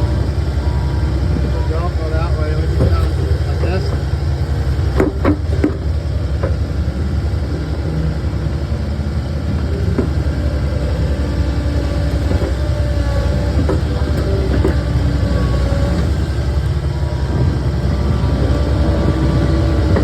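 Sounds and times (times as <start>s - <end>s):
diesel engine running: 0.0s - 20.0s
metallic clanks and knocks: 2.7s - 6.8s, 9.6s - 17.6s.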